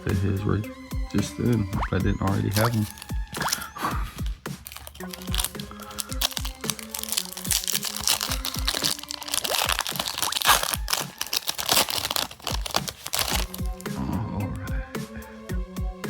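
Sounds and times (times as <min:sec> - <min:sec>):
background music with steady beat: 0:00.0 - 0:16.0
wrapper crinkling and tearing: 0:02.4 - 0:14.0.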